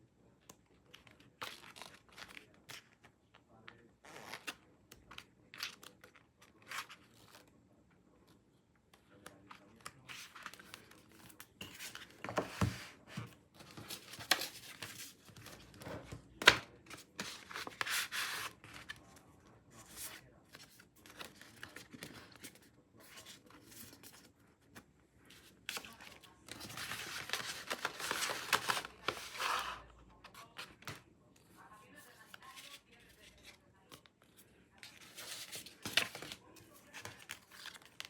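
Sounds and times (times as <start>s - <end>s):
rustling packaging: 25.3s - 31.0s, 32.0s - 38.0s.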